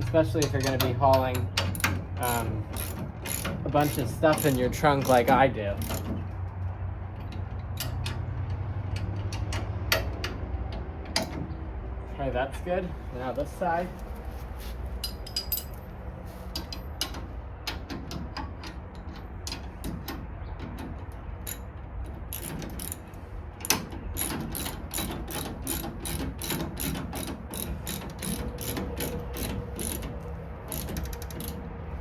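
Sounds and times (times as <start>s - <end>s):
ratchet wrench clicking: 0.2s - 6.2s, 22.3s - 31.6s.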